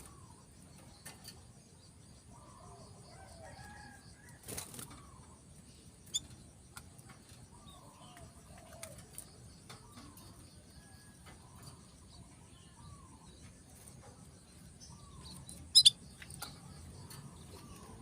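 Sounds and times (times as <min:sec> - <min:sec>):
wings fluttering: 0:04.4 - 0:05.2.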